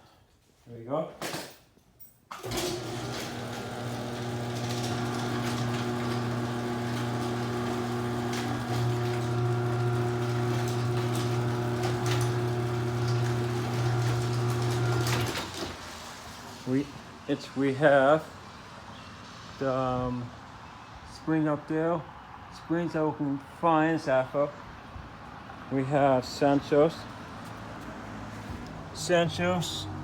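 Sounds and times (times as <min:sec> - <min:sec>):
garage door opener motor humming: 0:02.3 - 0:16.2.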